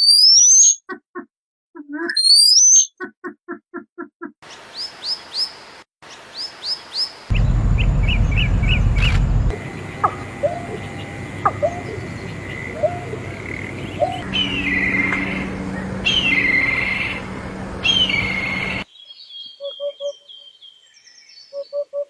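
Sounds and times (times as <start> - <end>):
short low pulses: 7.3 - 18.8
steady hum: 7.3 - 18.8
bird calls: 8.1 - 20.5.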